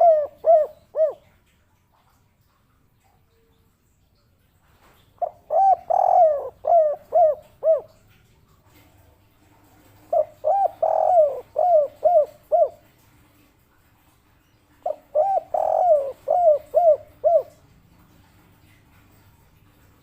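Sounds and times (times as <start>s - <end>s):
dove cooing: 0.0s - 1.3s, 5.2s - 8.0s, 9.7s - 13.0s, 14.8s - 17.7s.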